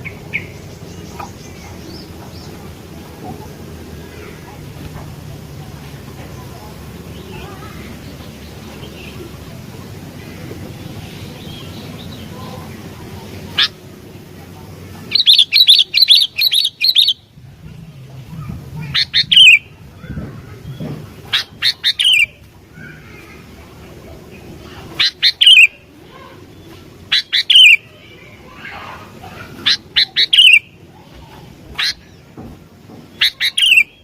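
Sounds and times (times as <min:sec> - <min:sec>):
bird chirping in sharp bursts: 0:14.7 - 0:18.0, 0:18.8 - 0:30.9, 0:33.1 - 0:34.0.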